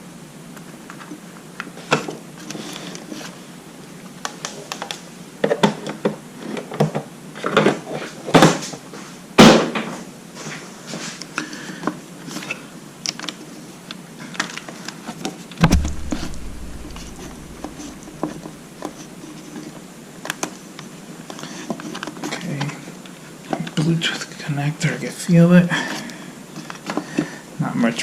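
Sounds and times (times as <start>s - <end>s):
sharp knocks: 15.6s - 18.5s.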